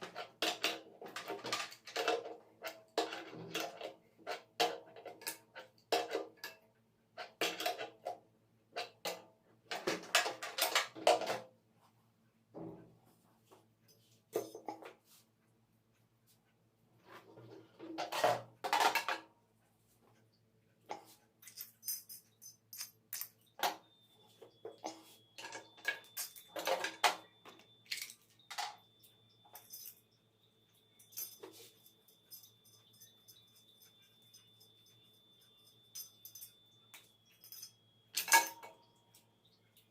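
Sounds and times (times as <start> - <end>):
metal tools clinking: 13.9 - 14.8, 20.9 - 39.9
hard objects clinking and scraping: 21.4 - 30.1
faint high whine: 23.6 - 39.9.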